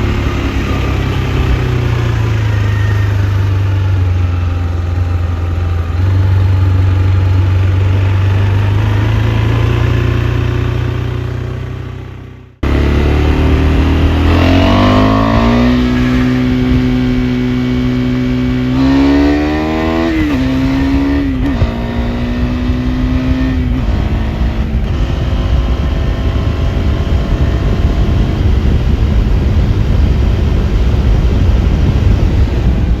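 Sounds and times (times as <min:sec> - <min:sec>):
motorcycle engine revving: 0:00.0 - 0:33.0
steady rushing noise: 0:12.6 - 0:33.0.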